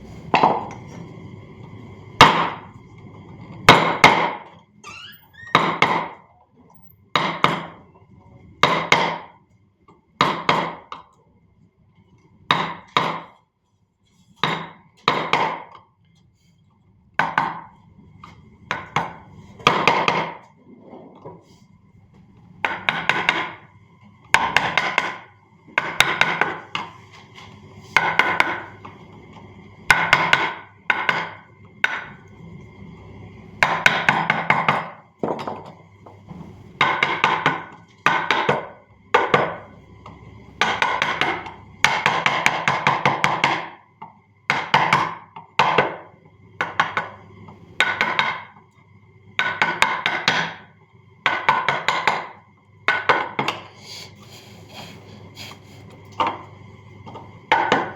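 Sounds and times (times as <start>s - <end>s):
carving tools knocking on wood: 0.3s - 0.8s, 2.2s - 2.6s, 3.7s - 4.5s, 5.5s - 6.2s, 7.1s - 7.8s, 8.6s - 9.4s, 10.2s - 11.1s, 12.5s - 13.4s, 14.4s - 15.8s, 17.2s - 17.7s, 18.7s - 20.5s, 22.6s - 23.7s, 24.3s - 26.9s, 28.0s - 28.8s, 29.9s - 32.2s, 33.6s - 35.7s, 36.3s - 39.7s, 40.6s - 46.0s, 46.6s - 47.2s, 47.8s - 48.6s, 49.4s - 53.7s, 55.6s - 57.9s.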